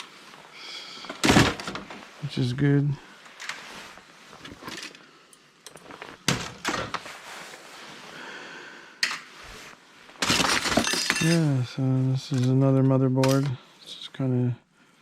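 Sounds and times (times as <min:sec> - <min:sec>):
plastic parts knocking and clattering: 0:01.1 - 0:02.0, 0:06.2 - 0:07.0, 0:10.2 - 0:11.5.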